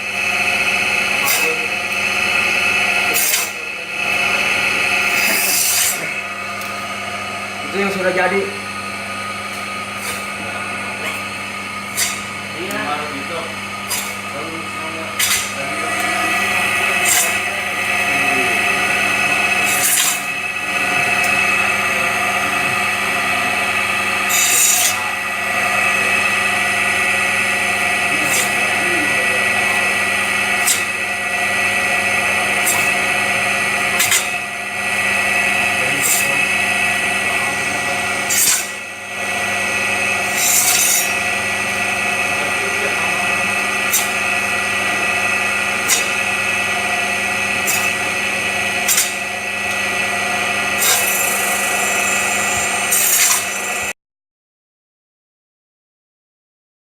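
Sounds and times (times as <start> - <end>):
chicken-cutting machine running: 0.0 - 54.0
blade cutting through chicken: 1.1 - 2.0, 2.9 - 6.8, 9.5 - 13.1, 13.8 - 53.9.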